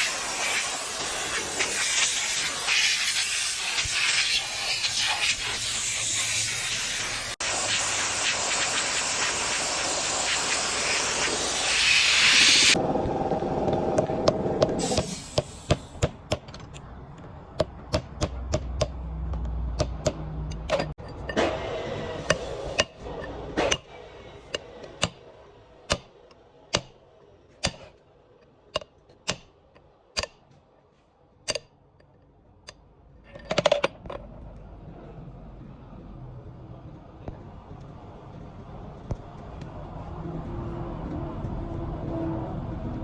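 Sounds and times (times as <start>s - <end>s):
hand tools tapping on metal: 13.7s - 21.4s.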